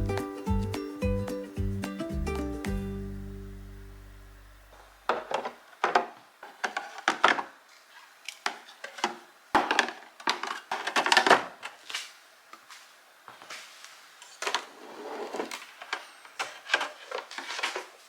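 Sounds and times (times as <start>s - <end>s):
music chord: 0.0s - 4.8s
plastic trays clacking: 5.1s - 7.6s, 8.3s - 11.8s, 14.4s - 18.0s.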